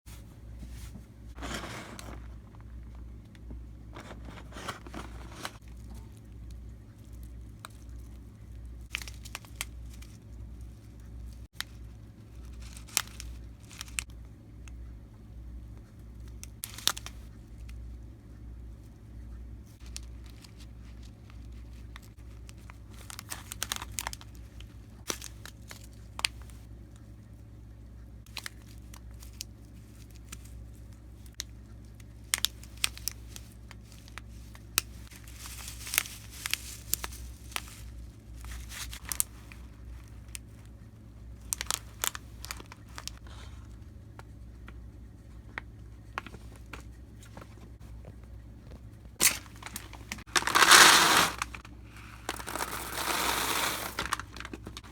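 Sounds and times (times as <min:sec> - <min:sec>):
plastic packaging crinkling and tearing: 0:04.0 - 0:06.2, 0:08.8 - 0:10.8, 0:11.6 - 0:14.1, 0:16.6 - 0:17.3, 0:19.8 - 0:26.6, 0:28.3 - 0:40.5, 0:41.4 - 0:43.2, 0:49.2 - 0:54.9.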